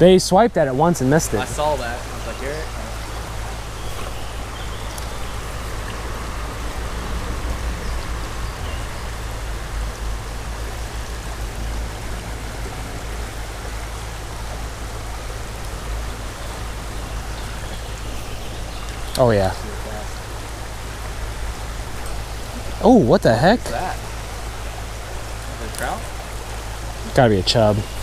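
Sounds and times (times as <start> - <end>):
creek water running: 0.0 - 28.0.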